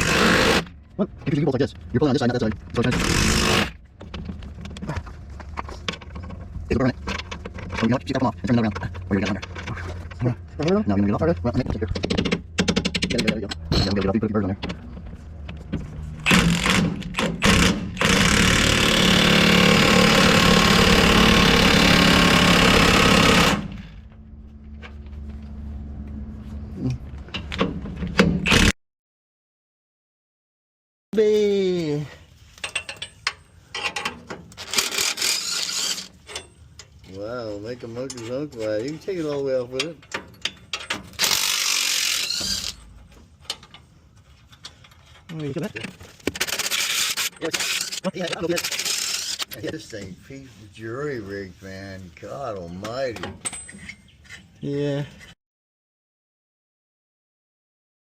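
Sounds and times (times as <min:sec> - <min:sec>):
ratchet wrench clicking: 0:41.2 - 0:42.8, 0:46.4 - 0:49.5.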